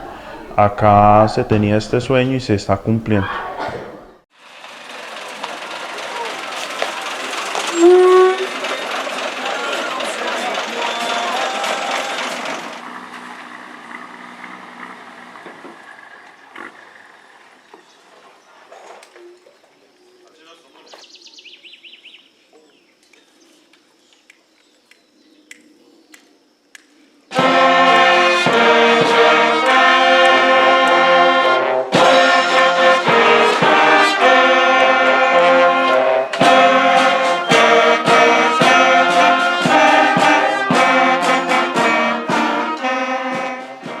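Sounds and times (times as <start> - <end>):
brass band playing: 6.1 - 12.8, 27.3 - 44.0.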